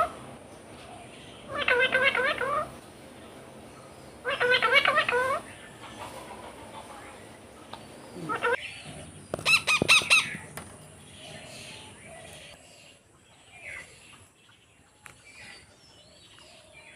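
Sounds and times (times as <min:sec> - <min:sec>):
parrot squawking: 0:00.0 - 0:00.2, 0:01.5 - 0:02.8, 0:04.2 - 0:05.5, 0:08.2 - 0:08.7, 0:09.4 - 0:10.4
parrot chirping: 0:01.4 - 0:02.8, 0:03.9 - 0:05.9, 0:07.2 - 0:08.7, 0:09.4 - 0:10.5.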